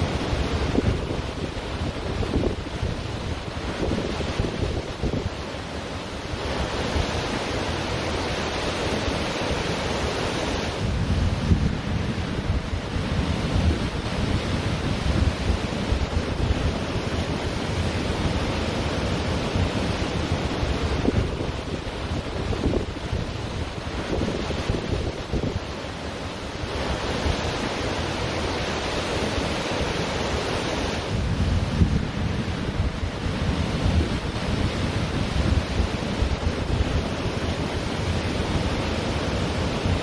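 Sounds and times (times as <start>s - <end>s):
wind buffeting microphone: 0.0s - 5.4s, 10.6s - 25.8s, 30.8s - 40.0s
surf washing onto beach: 0.0s - 40.0s.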